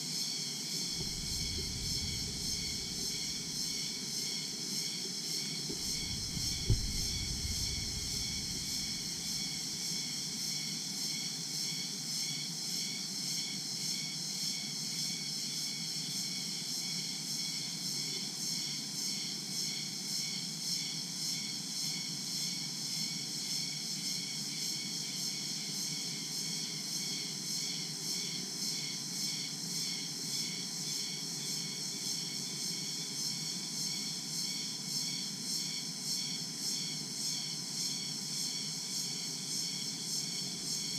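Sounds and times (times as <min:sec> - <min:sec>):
insects droning: 0:00.2 - 0:10.2, 0:27.7 - 0:40.9
low steady rumble: 0:00.9 - 0:04.0, 0:05.7 - 0:09.4.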